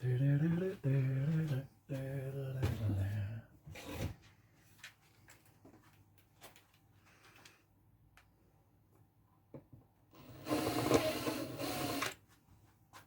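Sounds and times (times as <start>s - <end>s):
man humming low notes: 0.0s - 3.5s.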